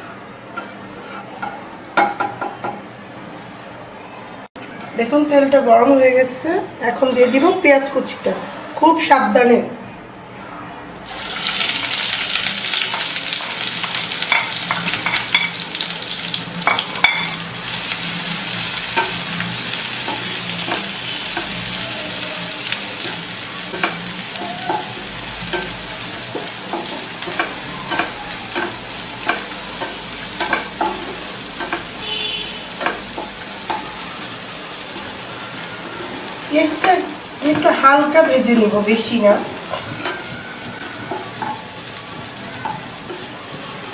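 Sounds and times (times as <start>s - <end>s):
spatula scraping pan: 0.0s - 1.7s
onions sizzling in oil: 11.0s - 43.9s.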